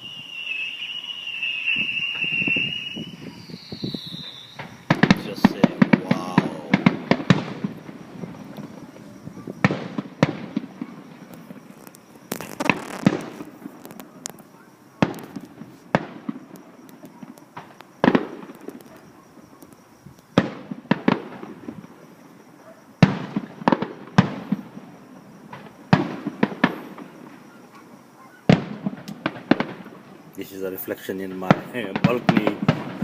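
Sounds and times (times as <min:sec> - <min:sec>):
distant fireworks bangs: 0:00.0 - 0:33.0.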